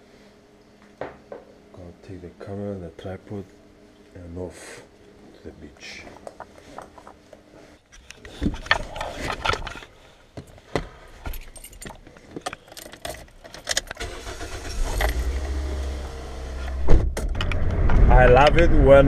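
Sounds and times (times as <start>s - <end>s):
keys jangling: 11.2s - 14.0s
car engine starting and running: 13.8s - 19.0s.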